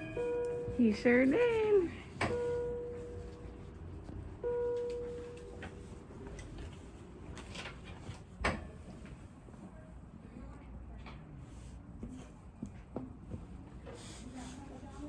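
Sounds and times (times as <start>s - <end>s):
electronic monitor chime: 2.3s - 3.2s.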